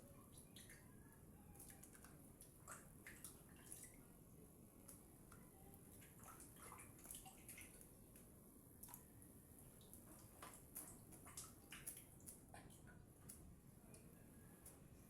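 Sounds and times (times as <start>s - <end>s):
water splashing and dripping: 1.5s - 4.2s, 4.8s - 14.0s.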